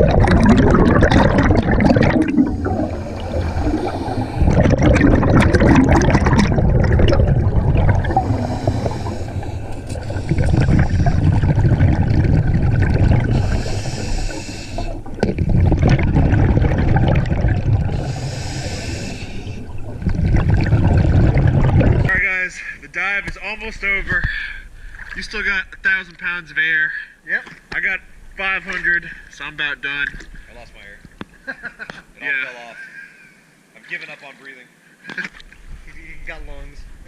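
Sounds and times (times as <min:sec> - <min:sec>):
bubbles burbling underwater: 0:00.0 - 0:22.2
regulator hiss on inhale: 0:02.4 - 0:04.6, 0:08.1 - 0:11.2, 0:13.2 - 0:15.1, 0:17.9 - 0:19.7.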